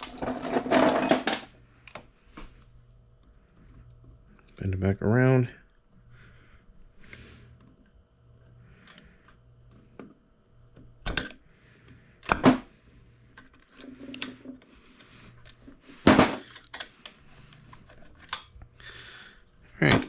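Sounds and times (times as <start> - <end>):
hand tools clicking on metal parts: 16.4 - 17.2.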